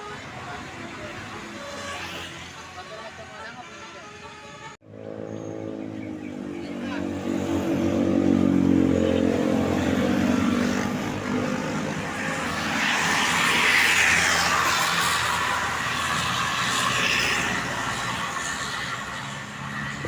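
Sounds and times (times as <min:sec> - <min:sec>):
bus passing by: 0:00.0 - 0:20.0.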